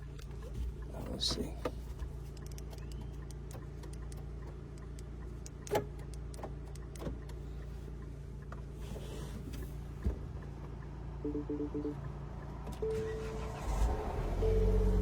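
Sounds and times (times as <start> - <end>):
light clicks and ticks: 0.1 - 8.7.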